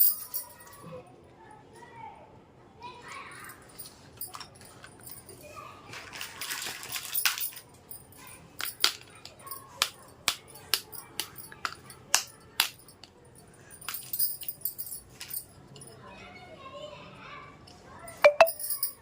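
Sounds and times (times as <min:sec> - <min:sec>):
plastic crinkly rustle: 0:05.8 - 0:07.7.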